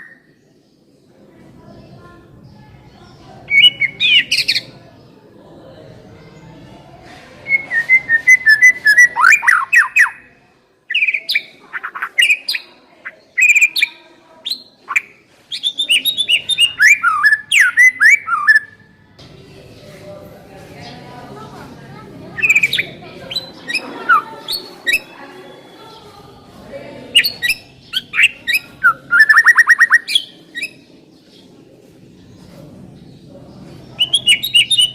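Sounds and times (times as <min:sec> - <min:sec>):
sharp down-slurred bird calls: 0:03.0 - 0:04.8, 0:07.4 - 0:18.8, 0:22.3 - 0:26.2, 0:27.1 - 0:31.4, 0:32.2 - 0:34.9
bird singing whistled notes: 0:03.5 - 0:04.6, 0:07.5 - 0:10.3, 0:14.5 - 0:18.8, 0:27.2 - 0:30.8, 0:34.0 - 0:34.9.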